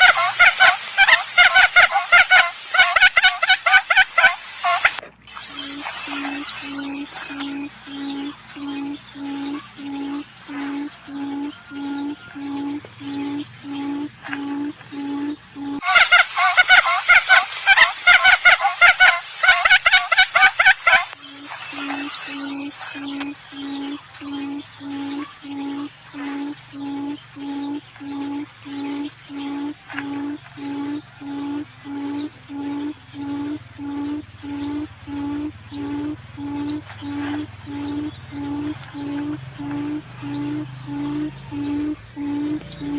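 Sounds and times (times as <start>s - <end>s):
low hooting quail call: 0.0s - 42.9s
faint high chirps: 4.6s - 16.9s, 21.0s - 42.9s.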